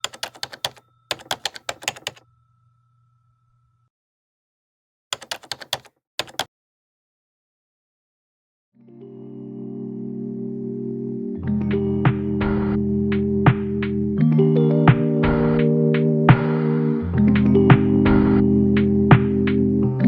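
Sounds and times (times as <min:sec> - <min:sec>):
typing on a keyboard: 0:00.0 - 0:02.2, 0:05.2 - 0:06.5.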